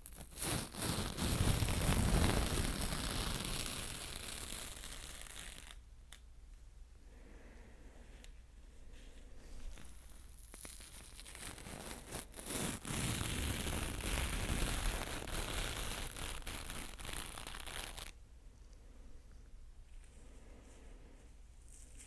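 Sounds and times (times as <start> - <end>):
scratchy rustling: 0.0 - 5.8, 8.8 - 18.1.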